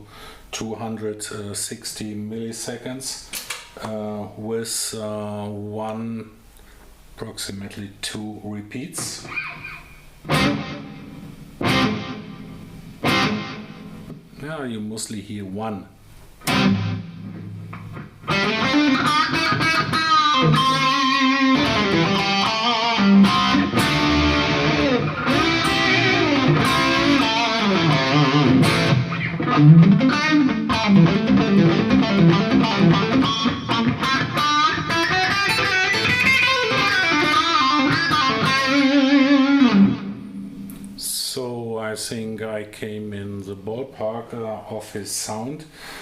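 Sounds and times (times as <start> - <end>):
distorted electric guitar lead: 9.2 - 14.3, 16.4 - 41.0.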